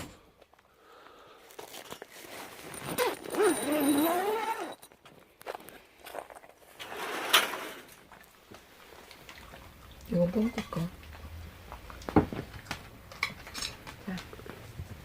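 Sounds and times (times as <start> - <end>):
dog whining: 3.0 - 4.9.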